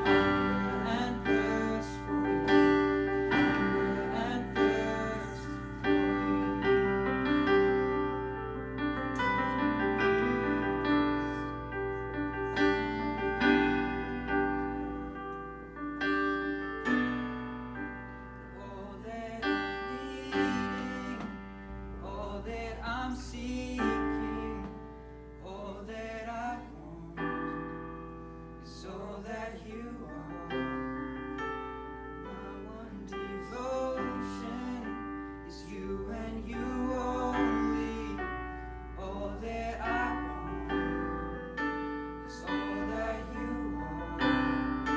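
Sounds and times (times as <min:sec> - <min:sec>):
person singing: 0:00.0 - 0:07.7, 0:09.2 - 0:14.7, 0:18.6 - 0:21.4
sustained keyboard chords: 0:00.0 - 0:26.1, 0:26.8 - 0:44.9
piano: 0:00.0 - 0:44.9.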